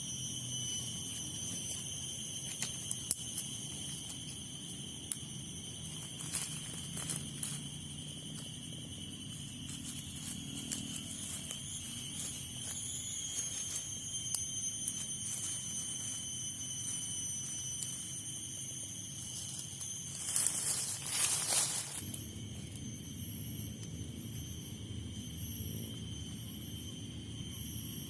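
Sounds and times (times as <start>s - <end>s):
insects droning: 0.0s - 28.0s.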